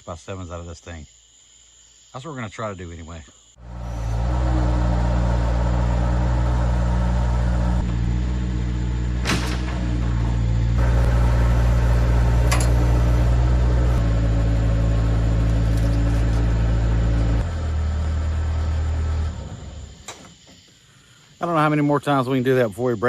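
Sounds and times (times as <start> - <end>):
machine engine running under load: 3.6 - 20.1.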